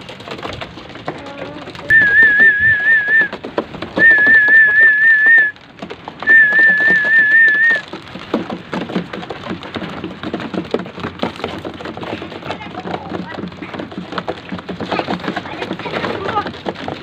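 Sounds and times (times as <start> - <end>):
pigeons pecking corn: 0.0 - 17.0
warbling whistle: 1.9 - 3.3, 4.0 - 5.5, 6.3 - 7.8.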